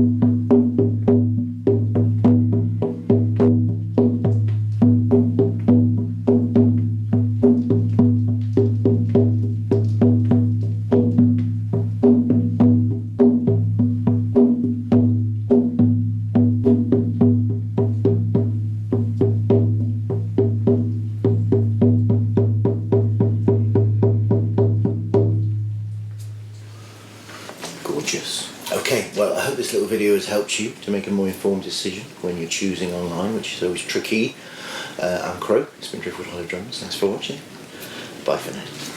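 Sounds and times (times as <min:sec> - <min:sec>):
frame drum booming: 0:00.0 - 0:26.5.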